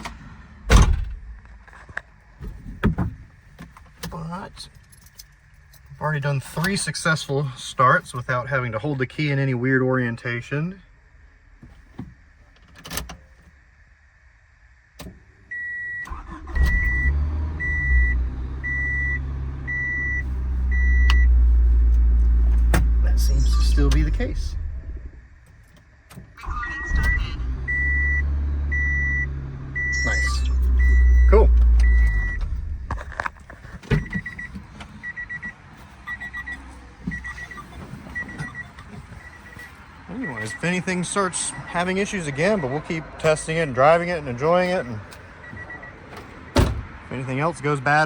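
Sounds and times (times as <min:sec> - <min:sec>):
car engine cranking and running: 0:00.0 - 0:09.4, 0:15.0 - 0:47.0
dashboard warning chime beeping: 0:15.5 - 0:25.4, 0:26.4 - 0:33.2, 0:33.9 - 0:46.8.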